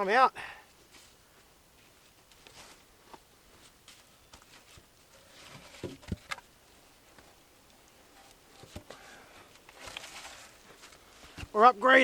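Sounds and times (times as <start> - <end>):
wooden slats clicking and rustling: 3.9 - 6.5, 8.2 - 11.6.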